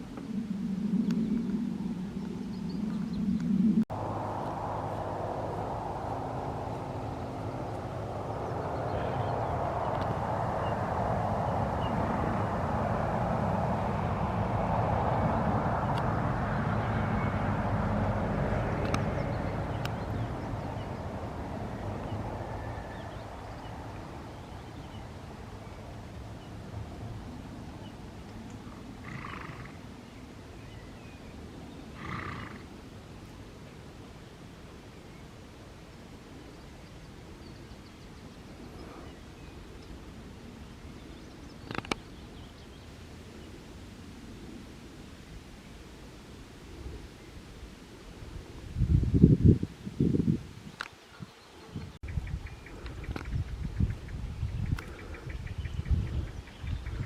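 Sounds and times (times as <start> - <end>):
low background rumble: 0.0 - 29.0
road noise: 0.0 - 57.0
wind rushing over microphone: 0.0 - 57.0.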